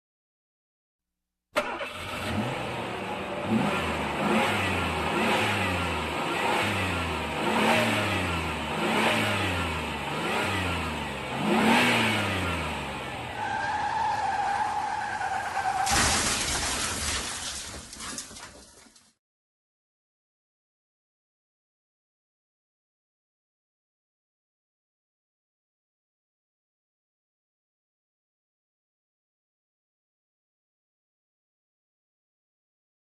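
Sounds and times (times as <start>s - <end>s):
car engine revving: 1.6s - 15.8s.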